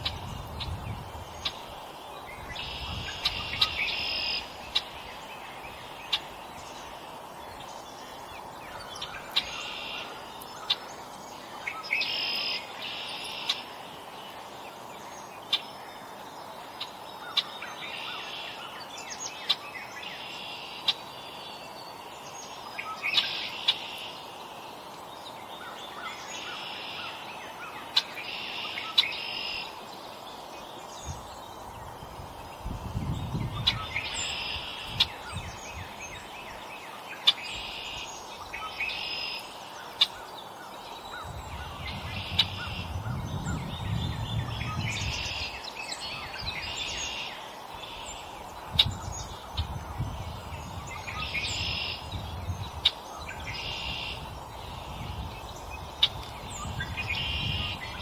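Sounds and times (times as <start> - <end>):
songbirds chirping: 0.0 - 58.0.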